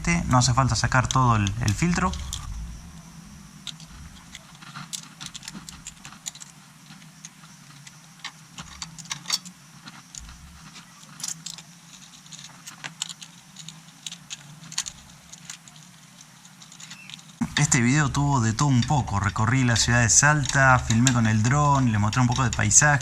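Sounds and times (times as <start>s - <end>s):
faint low hum: 0.0s - 23.0s
metallic clicks of hand tools: 20.1s - 23.0s.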